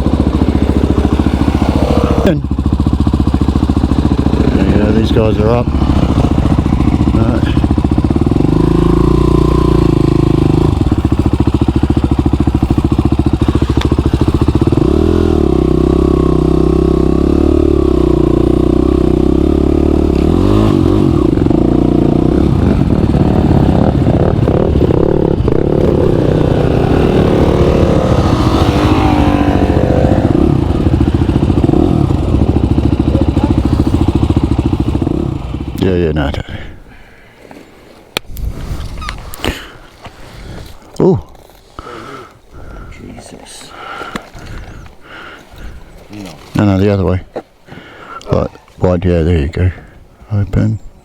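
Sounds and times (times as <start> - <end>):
motorcycle engine revving: 0.0 - 36.0.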